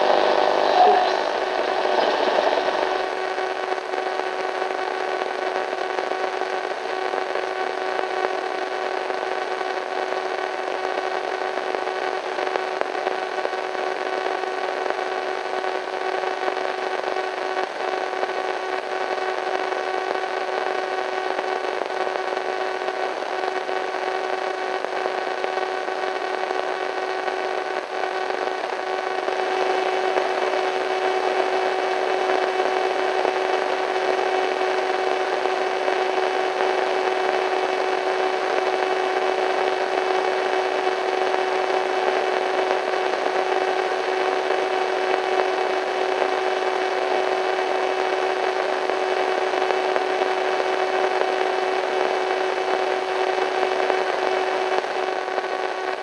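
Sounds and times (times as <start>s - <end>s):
humming tones: 0.0s - 3.4s
radio static hiss: 0.0s - 56.0s.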